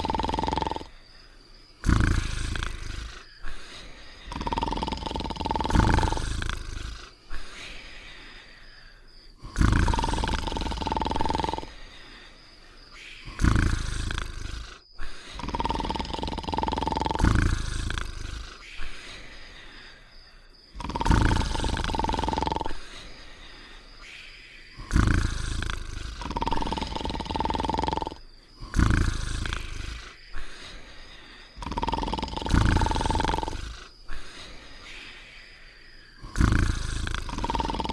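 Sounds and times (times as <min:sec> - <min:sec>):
cartoon dog snoring: 0:00.0 - 0:01.0, 0:01.8 - 0:07.8, 0:09.4 - 0:12.3, 0:13.2 - 0:19.3, 0:20.7 - 0:23.2, 0:24.7 - 0:34.6, 0:36.2 - 0:37.9
quiet breathing: 0:00.0 - 0:37.9.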